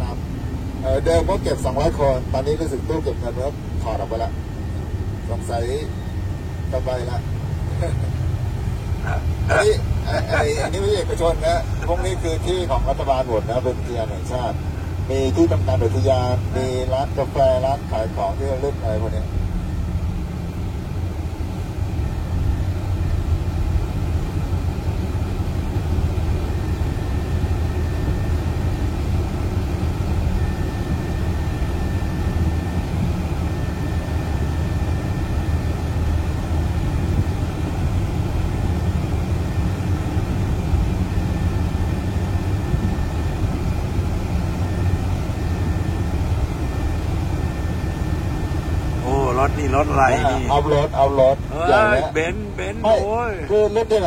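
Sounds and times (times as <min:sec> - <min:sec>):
vehicle engine and road noise: 0:00.0 - 0:54.0
faint thin whine: 0:25.5 - 0:54.0.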